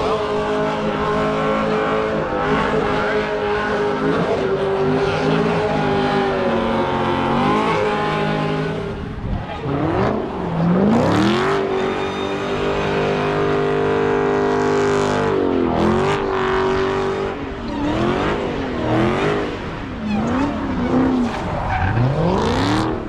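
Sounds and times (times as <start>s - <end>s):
car engine revving: 0.0s - 23.0s
tyres skidding: 16.4s - 23.0s.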